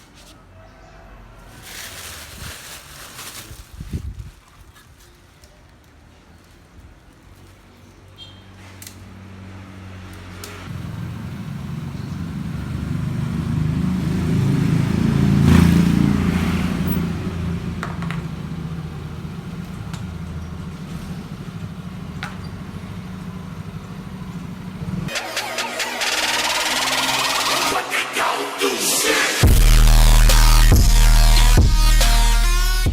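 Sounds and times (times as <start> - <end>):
vehicle engine passing: 9.1 - 31.6.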